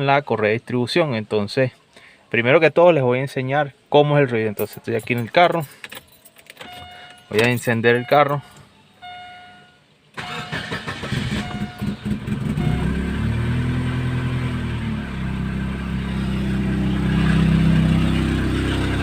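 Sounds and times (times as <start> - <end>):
car engine starting and idling: 5.1 - 19.0
dashboard chime beeping: 6.6 - 10.7, 11.3 - 13.0.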